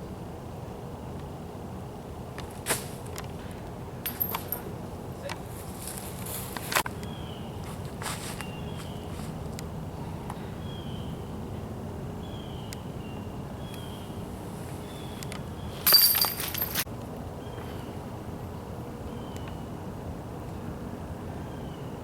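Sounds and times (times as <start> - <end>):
disc hitting basket chains: 4.0 - 4.7, 15.8 - 16.8.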